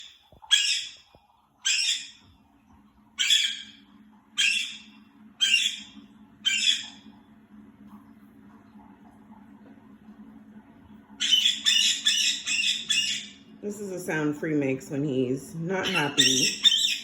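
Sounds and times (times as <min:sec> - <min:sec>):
parrot screaming: 0:00.0 - 0:01.0, 0:01.6 - 0:02.2, 0:03.2 - 0:03.8, 0:04.4 - 0:07.0, 0:11.2 - 0:13.4, 0:15.8 - 0:17.0.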